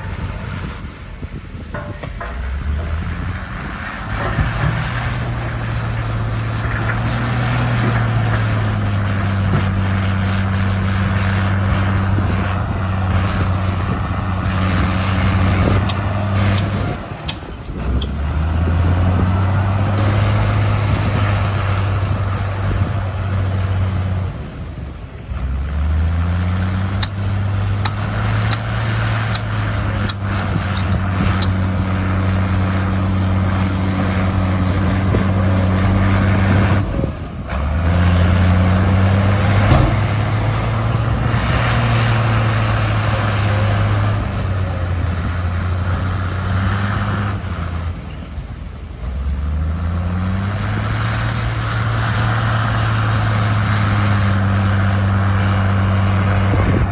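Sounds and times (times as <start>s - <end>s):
bulldozer diesel engine under load: 0.0s - 56.9s
sharp metal clanks: 1.7s - 3.4s.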